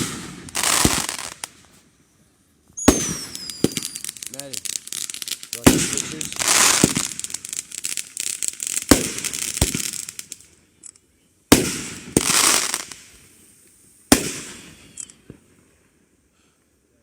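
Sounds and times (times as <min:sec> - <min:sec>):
fireworks bangs: 0:00.0 - 0:01.8, 0:02.8 - 0:10.4, 0:11.5 - 0:13.3, 0:14.1 - 0:15.4
fireworks crackling: 0:00.0 - 0:01.9, 0:02.8 - 0:10.7, 0:11.5 - 0:15.6.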